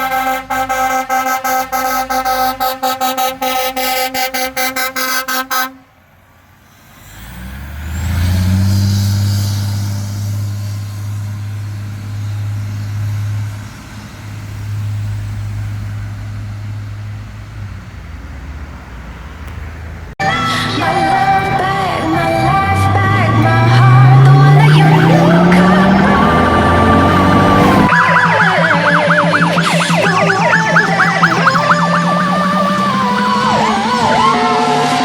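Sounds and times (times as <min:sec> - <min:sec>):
fire truck horn short blasts: 0:00.0 - 0:05.9
fire truck engine drone: 0:00.0 - 0:35.0.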